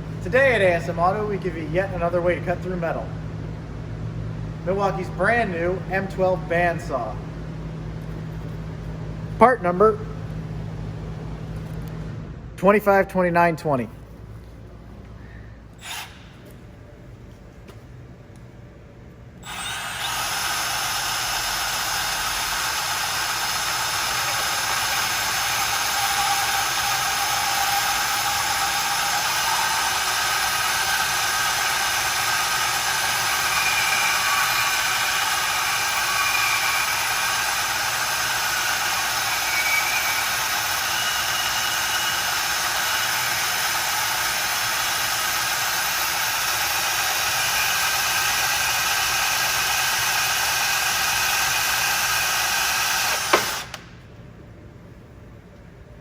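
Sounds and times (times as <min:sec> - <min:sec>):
bandsaw cutting steel bolt: 0:22.7 - 0:53.9.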